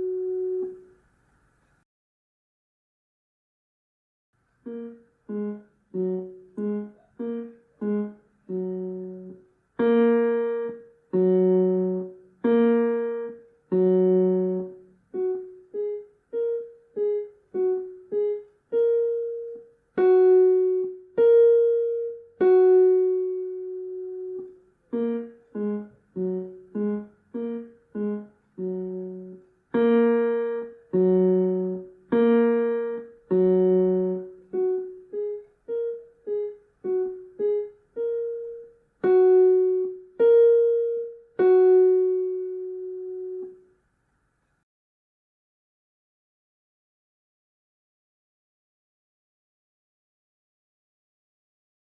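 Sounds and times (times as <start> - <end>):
piano playing simple melody: 0.0 - 1.0, 4.6 - 43.8.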